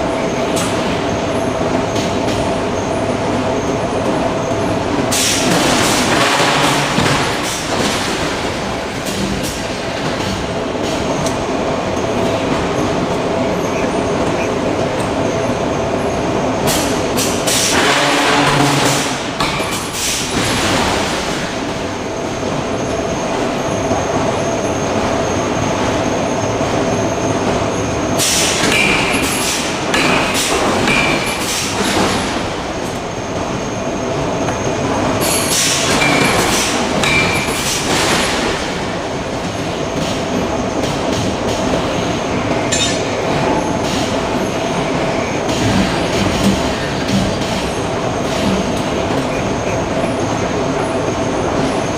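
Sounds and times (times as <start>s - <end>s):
machinery rumbling: 0.0s - 19.4s.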